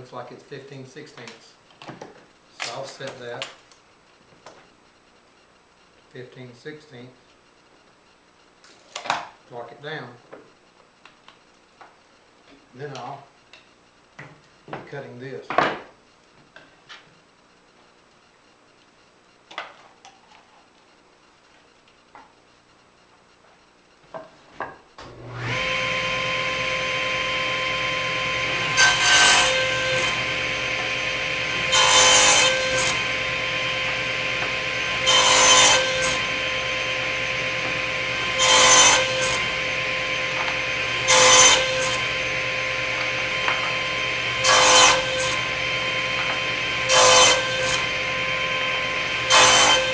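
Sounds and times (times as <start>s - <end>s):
table saw motor running: 25.1s - 49.9s
saw blade cutting wood: 25.4s - 49.9s.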